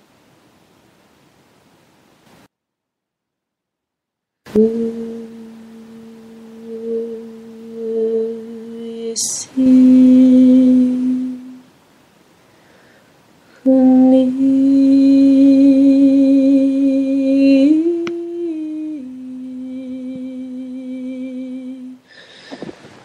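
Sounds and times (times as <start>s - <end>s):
person humming long notes: 4.5s - 11.7s, 13.6s - 22.0s.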